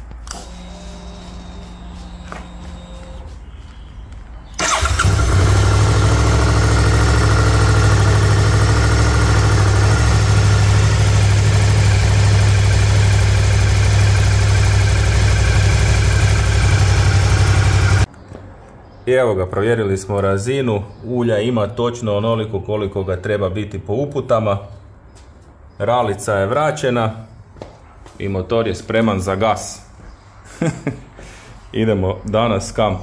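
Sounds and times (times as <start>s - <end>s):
motorcycle engine starting and idling: 0.3s - 3.3s, 4.5s - 18.1s.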